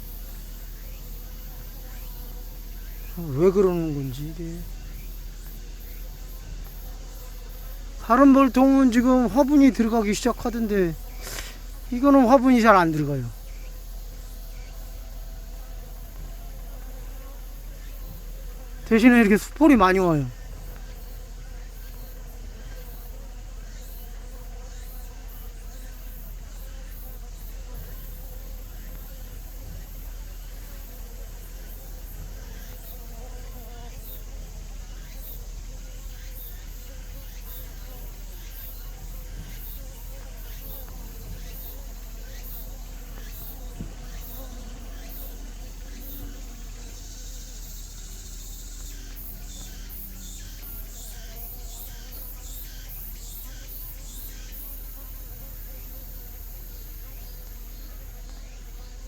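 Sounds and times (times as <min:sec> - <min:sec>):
bees buzzing: 0:00.0 - 0:59.0
high insect chirp: 0:00.0 - 0:59.0.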